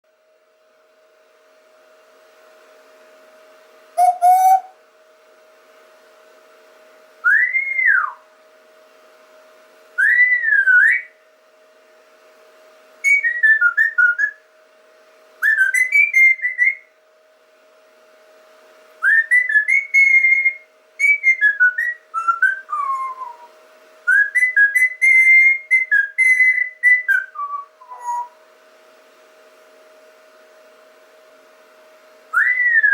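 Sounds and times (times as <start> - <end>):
faint steady hum: 0.1 - 32.9
person whistling warbling phrases: 4.0 - 4.7, 27.5 - 28.3.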